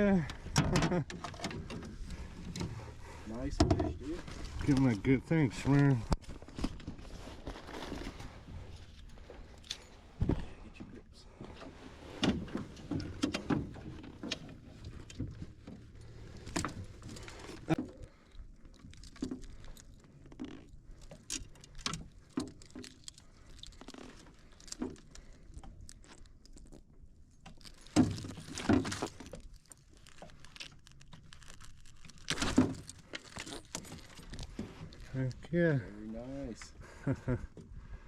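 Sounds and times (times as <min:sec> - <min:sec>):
fishing gear clicking and jingling: 0:08.7 - 0:10.2, 0:12.4 - 0:35.4.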